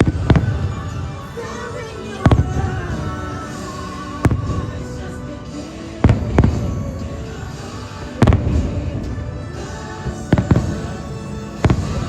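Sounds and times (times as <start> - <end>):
soundtrack music: 0.0 - 12.0
fireworks booming: 2.2 - 5.2, 6.0 - 9.3.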